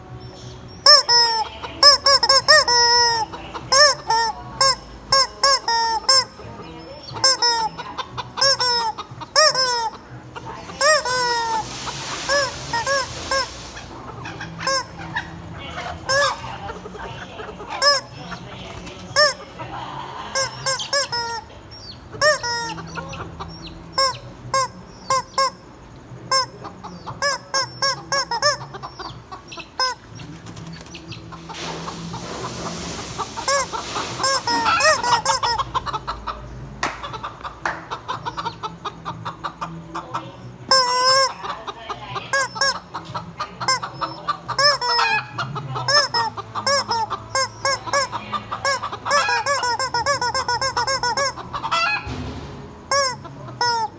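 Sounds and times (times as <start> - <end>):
chickens clucking: 0.0 - 53.9
rushing noise: 10.7 - 14.2, 31.4 - 35.6.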